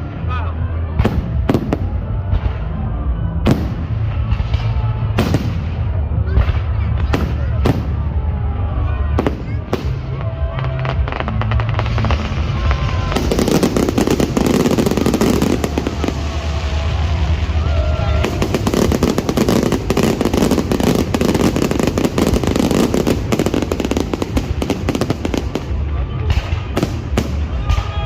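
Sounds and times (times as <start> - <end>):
fireworks booms rumbling: 0.9 - 28.0
fireworks crackling: 9.1 - 28.0.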